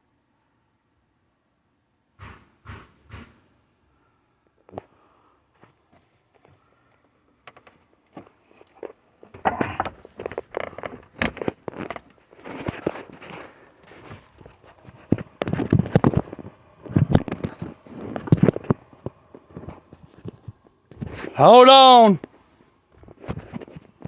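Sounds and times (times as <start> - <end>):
rustling: 5.7 - 21.4
knocks and thumps on joists: 9.2 - 13.0.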